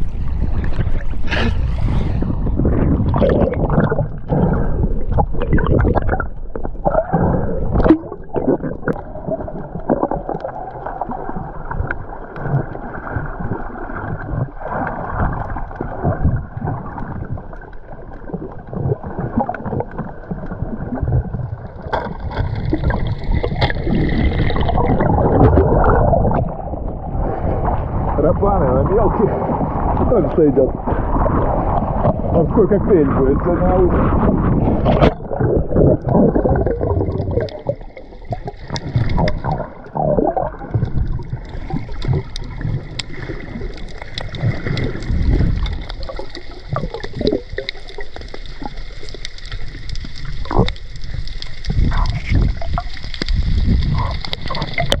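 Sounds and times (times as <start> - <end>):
muffled water sloshing and gurgling: 0.0 - 55.0.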